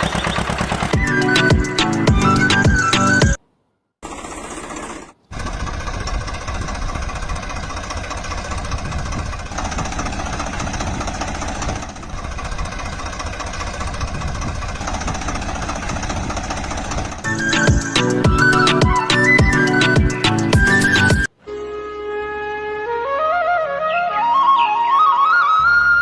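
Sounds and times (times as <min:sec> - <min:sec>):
small power tool rattling: 0:04.0 - 0:17.3.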